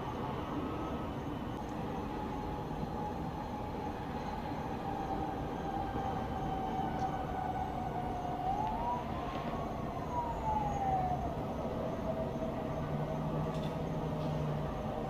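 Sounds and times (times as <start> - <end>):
emergency siren wailing: 5.6 - 12.8.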